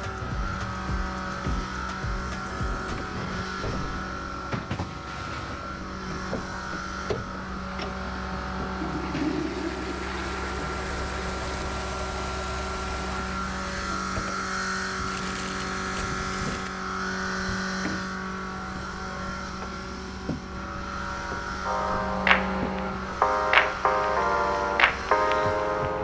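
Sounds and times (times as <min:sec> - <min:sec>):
truck engine droning: 0:05.5 - 0:26.0.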